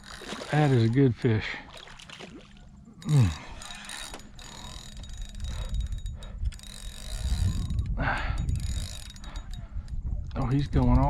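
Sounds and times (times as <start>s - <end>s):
fishing reel clicking and ratcheting: 0.0s - 2.0s, 3.0s - 11.0s.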